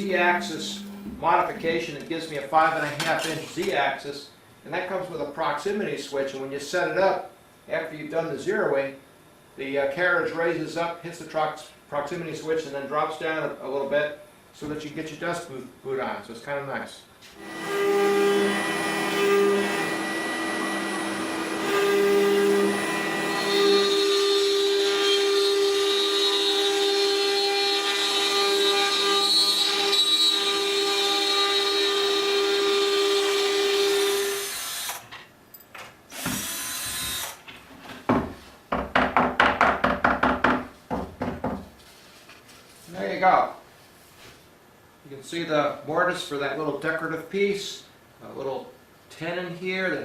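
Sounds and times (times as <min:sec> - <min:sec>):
router spindle whine: 0:00.0 - 0:01.6, 0:17.4 - 0:35.0, 0:36.1 - 0:37.4
rhythmic strokes: 0:00.0 - 0:01.9.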